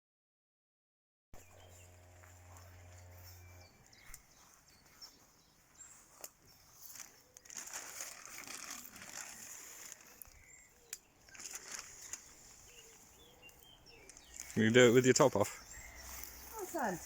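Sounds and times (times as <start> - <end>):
faint birdsong: 1.4 - 17.0
rustling and crinkling handling: 1.9 - 17.0
sharp clicks: 13.4 - 14.6.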